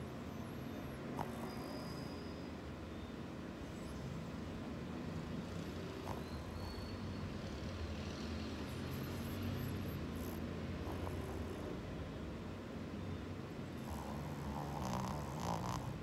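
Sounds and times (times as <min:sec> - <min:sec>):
dog snoring: 0:00.0 - 0:02.4, 0:05.3 - 0:12.0, 0:13.5 - 0:16.0.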